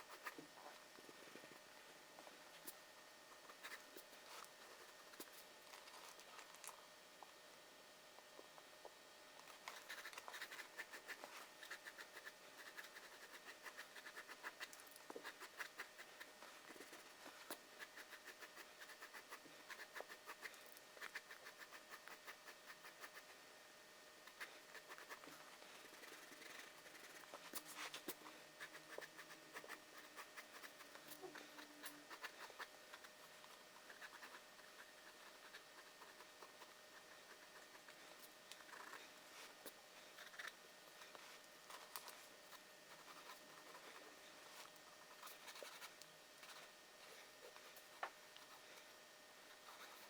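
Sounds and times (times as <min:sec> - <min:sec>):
drawing tool scratching on paper: 0:09.7 - 0:23.3, 0:24.3 - 0:38.0.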